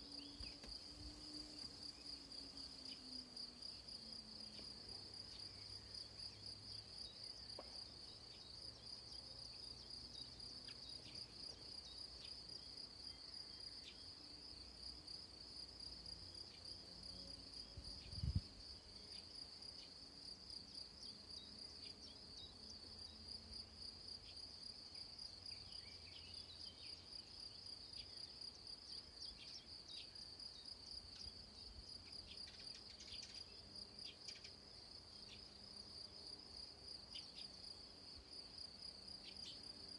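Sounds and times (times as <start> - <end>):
crickets chirping: 0.0 - 39.9.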